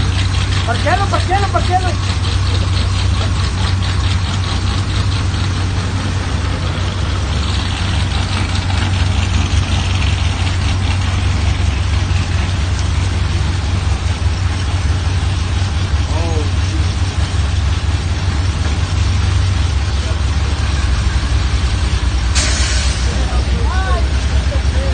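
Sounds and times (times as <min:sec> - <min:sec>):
vehicle engine running: 0:00.0 - 0:24.9
rushing hiss: 0:21.8 - 0:23.5.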